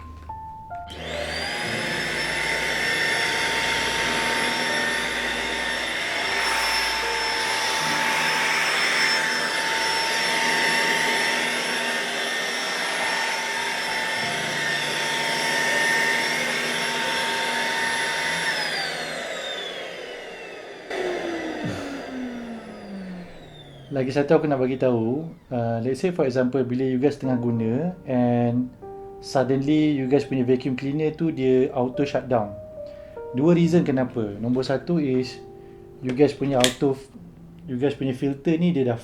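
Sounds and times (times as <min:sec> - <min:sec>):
handheld vacuum cleaner whine: 0:00.9 - 0:27.4, 0:36.1 - 0:36.8.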